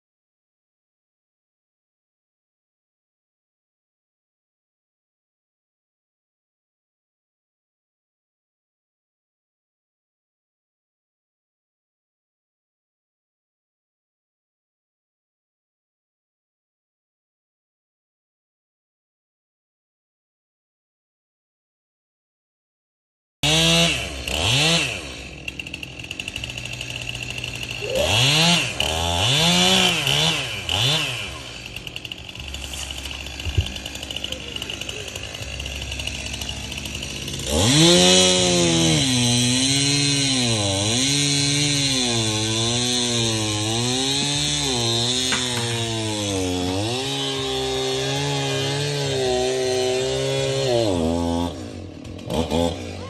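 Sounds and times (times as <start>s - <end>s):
chainsaw engine revving: 23.4s - 53.0s.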